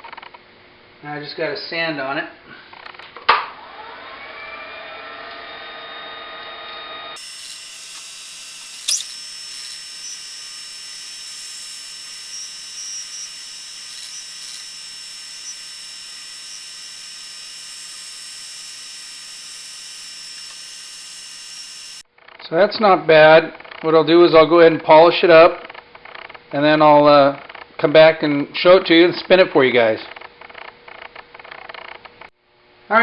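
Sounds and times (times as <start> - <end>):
sanding on lathe: 7.2 - 22.0
wood lathe whining: 7.2 - 22.0.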